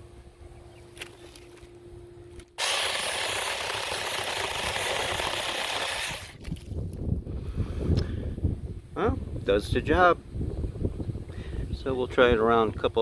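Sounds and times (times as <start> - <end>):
chainsaw motor hum: 2.6 - 6.4
chainsaw cutting branch: 2.6 - 6.6.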